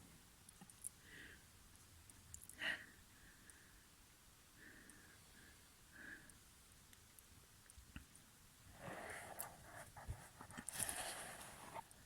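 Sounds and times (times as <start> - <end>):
soft breath through nose: 4.6 - 6.4, 8.7 - 12.0.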